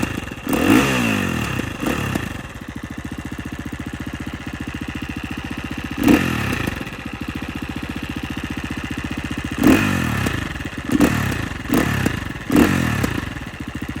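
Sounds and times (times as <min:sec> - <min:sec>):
dirt bike engine blips: 0:00.0 - 0:14.0
dirt bike engine idling: 0:00.0 - 0:14.0.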